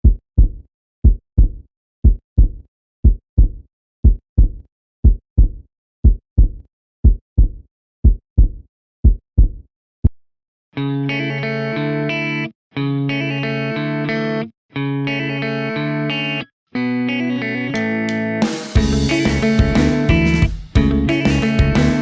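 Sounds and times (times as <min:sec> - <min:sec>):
heartbeat thumps: 0:00.0 - 0:10.2, 0:18.8 - 0:22.0.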